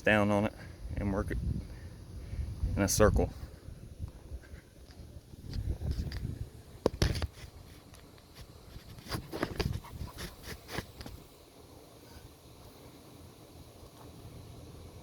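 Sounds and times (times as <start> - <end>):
small clicks and scrapes: 4.4 - 11.2
hands rubbing plastic: 7.0 - 11.2.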